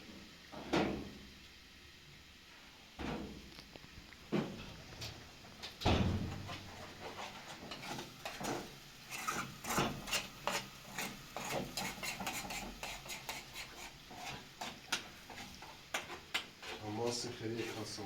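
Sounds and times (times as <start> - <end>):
objects scraping and clinking: 6.8 - 18.0.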